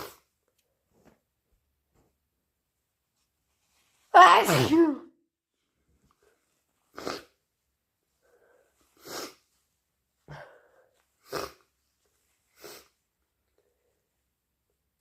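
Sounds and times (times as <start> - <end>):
person sneezing: 4.2 - 5.1
person breathing in: 10.3 - 11.0.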